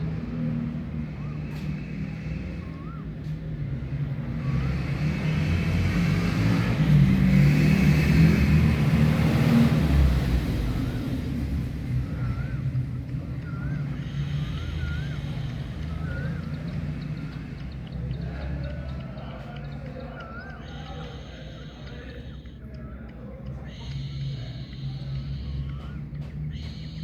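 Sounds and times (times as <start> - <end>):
car engine rumble passing: 0.0 - 27.0
bird whistling: 2.6 - 3.2, 11.9 - 27.0.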